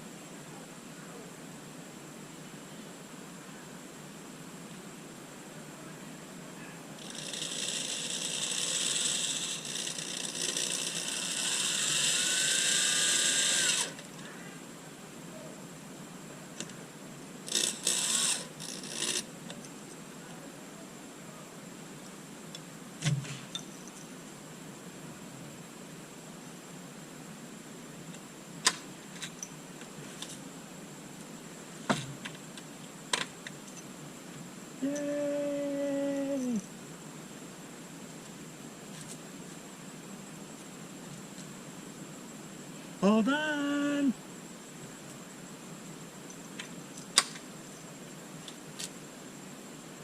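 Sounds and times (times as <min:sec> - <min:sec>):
power drill running: 0:07.1 - 0:14.0, 0:17.5 - 0:19.2.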